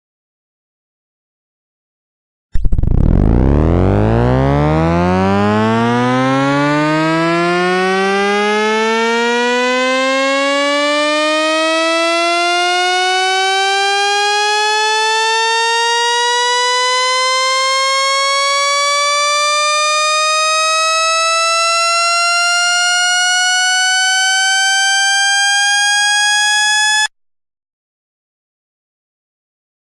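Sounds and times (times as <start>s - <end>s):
buzzy tone gliding upward: 2.6s - 8.3s, 25.2s - 27.1s.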